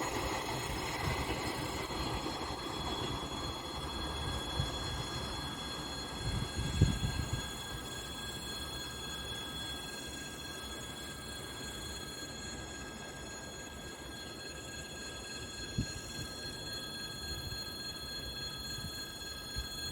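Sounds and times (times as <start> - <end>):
freight train rumbling past: 0.0 - 7.4.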